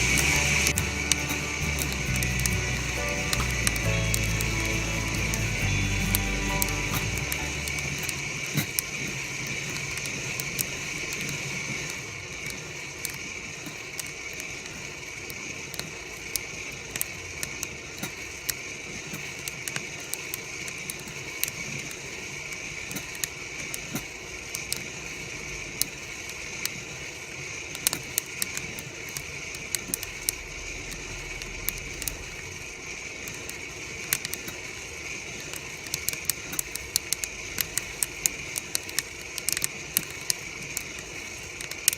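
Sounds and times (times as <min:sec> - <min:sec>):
roaster hiss and hum: 0:00.0 - 0:41.9
coffee beans popping: 0:15.7 - 0:25.2, 0:25.8 - 0:41.9.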